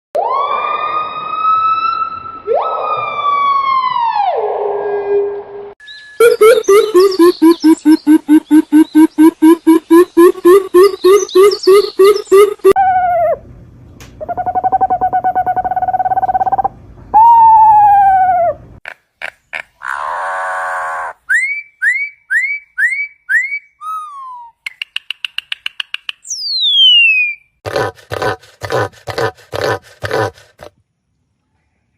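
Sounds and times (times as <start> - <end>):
bird calls: 6.2 - 12.8.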